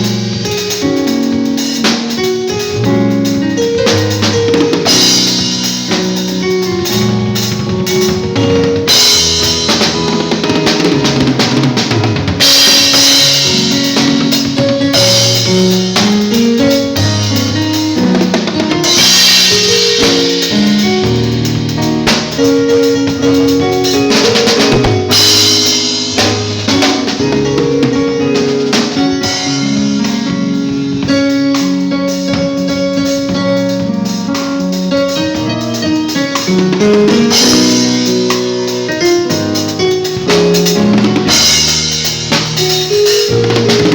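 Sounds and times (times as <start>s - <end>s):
drum kit playing: 0.0s - 43.9s
bass line: 20.5s - 27.4s.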